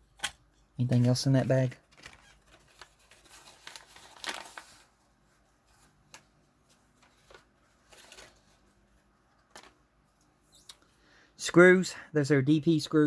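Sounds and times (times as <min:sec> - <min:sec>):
plastic bag crinkling: 0:00.9 - 0:05.0.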